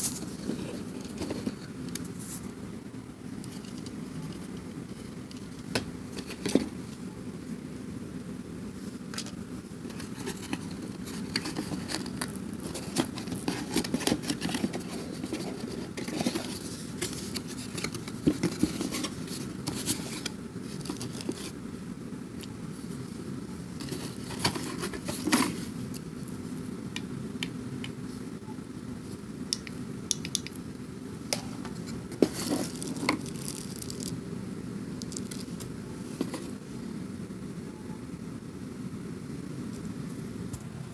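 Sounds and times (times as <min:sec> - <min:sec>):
steady low hum: 0:00.0 - 0:40.9.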